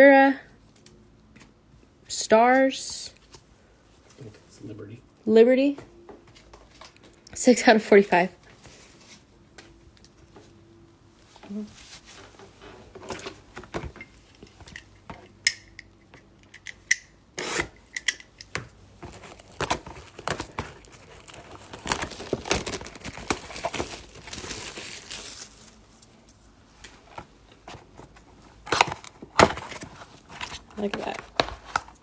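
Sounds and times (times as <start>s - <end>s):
card rustling: 14.4s - 25.9s, 28.0s - 32.0s
cards sliding and rubbing: 17.4s - 17.8s.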